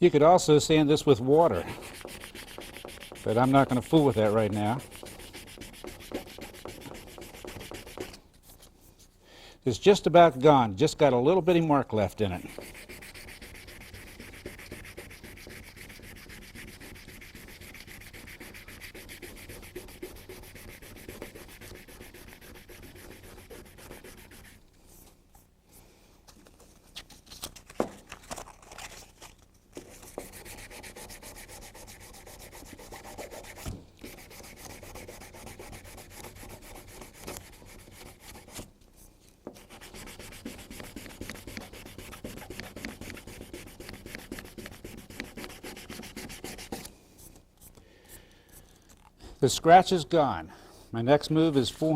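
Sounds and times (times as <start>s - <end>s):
sandpaper rubbing on plastic: 1.5s - 8.2s, 12.4s - 24.6s, 29.8s - 38.7s, 39.5s - 46.9s.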